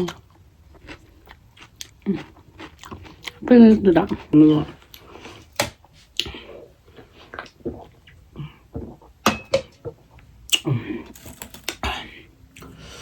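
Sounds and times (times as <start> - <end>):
crisp shells crunching and chewing: 0.0 - 5.2.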